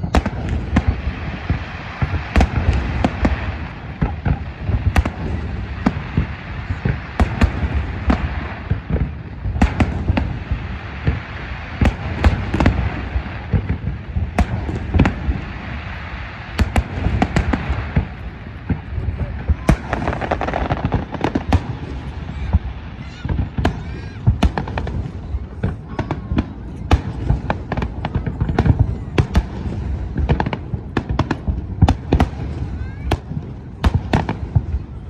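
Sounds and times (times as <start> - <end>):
firework bursts and cracks: 0.0 - 35.0.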